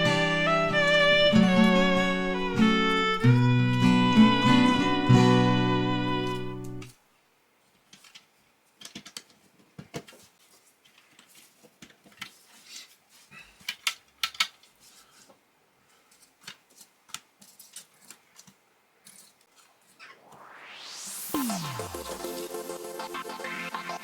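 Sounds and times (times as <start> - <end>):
plastic pieces clicking: 7.9 - 9.4, 13.6 - 14.7.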